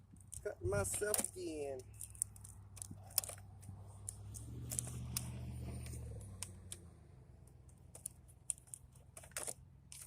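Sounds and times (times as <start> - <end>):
vehicle engine humming: 0.0 - 10.0.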